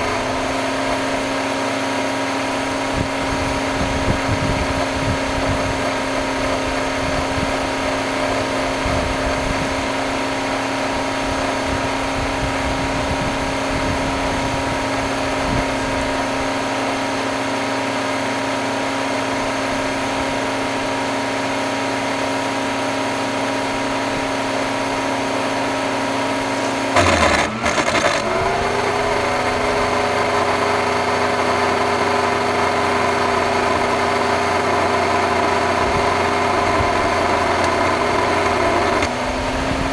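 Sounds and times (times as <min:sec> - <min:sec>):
vacuum cleaner whining: 0:00.0 - 0:39.9
loud clatter: 0:26.5 - 0:39.9.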